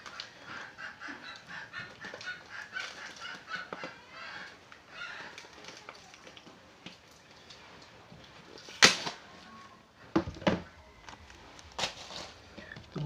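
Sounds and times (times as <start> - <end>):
chickens clucking: 0.0 - 6.2, 9.5 - 13.0.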